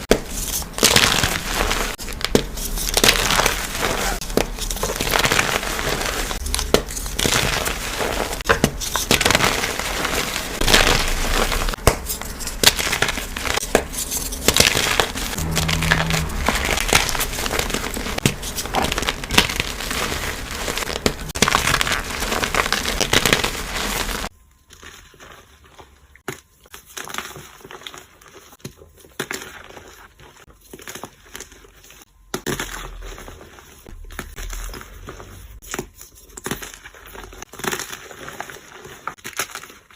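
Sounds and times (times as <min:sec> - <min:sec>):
chalk blocks crunching: 0:00.0 - 0:25.8.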